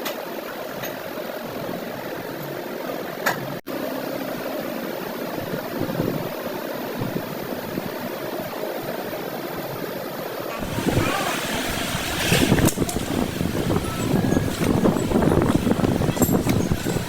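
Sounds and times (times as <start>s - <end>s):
machine humming: 10.6s - 17.0s.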